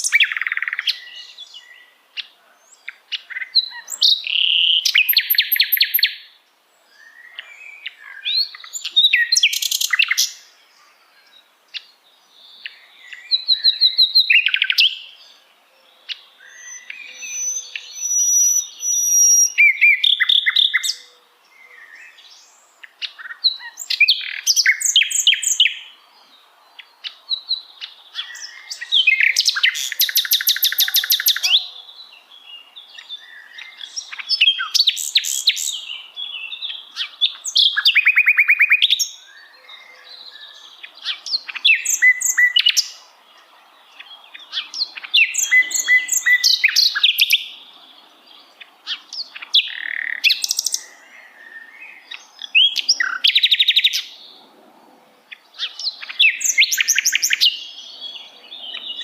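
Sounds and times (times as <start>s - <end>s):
nightingale singing: 0.0s - 54.5s, 55.2s - 59.0s.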